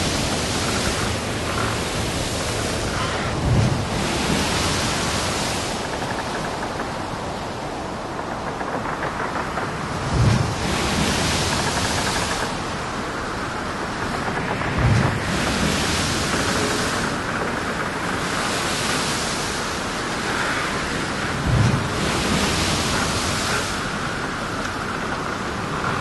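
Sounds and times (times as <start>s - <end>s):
sea: 0.0s - 26.0s
wind rushing over microphone: 0.0s - 26.0s.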